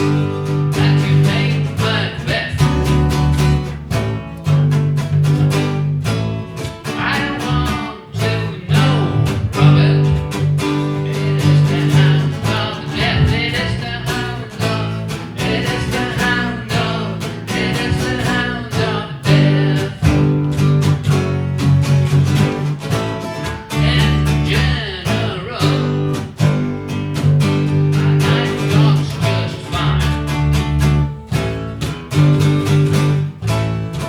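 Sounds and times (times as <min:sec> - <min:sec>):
acoustic guitar strumming: 0:00.0 - 0:34.0
person singing: 0:07.0 - 0:20.3, 0:23.7 - 0:25.9, 0:28.0 - 0:30.3.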